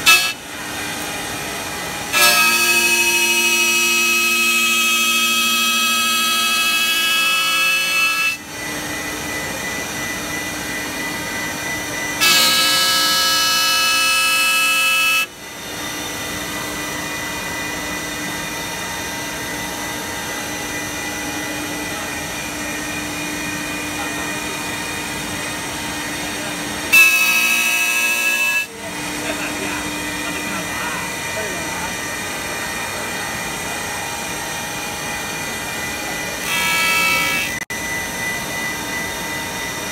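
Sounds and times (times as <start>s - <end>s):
wood lathe humming: 17.3s - 39.9s.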